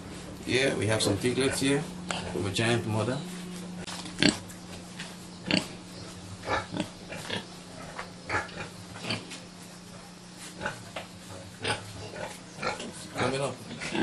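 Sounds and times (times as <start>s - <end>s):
steady low hum: 0.0s - 14.0s
pigs grunting and squealing: 4.1s - 4.5s, 5.4s - 9.3s, 11.4s - 14.0s.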